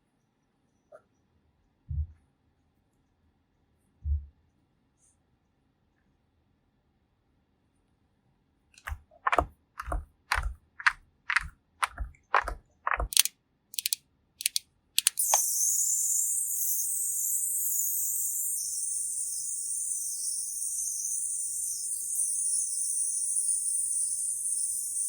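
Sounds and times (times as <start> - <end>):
crisp taps and clicks: 8.8 - 15.2
steady high hiss: 14.5 - 25.0.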